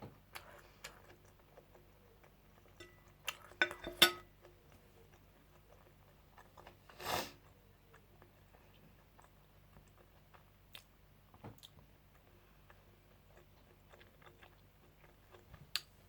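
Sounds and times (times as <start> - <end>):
quiet chewing: 0.1 - 16.0
cutlery clicking on a plate: 3.6 - 4.3.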